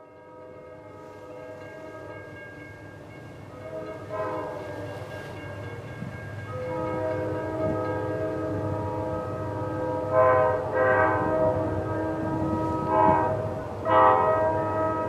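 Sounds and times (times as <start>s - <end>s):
locomotive air horn chord: 3.7s - 5.4s, 6.6s - 15.0s.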